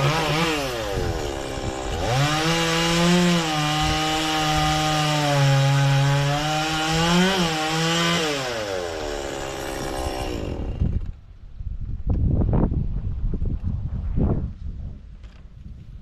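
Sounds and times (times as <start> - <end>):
chainsaw cutting wood: 0.0 - 11.3.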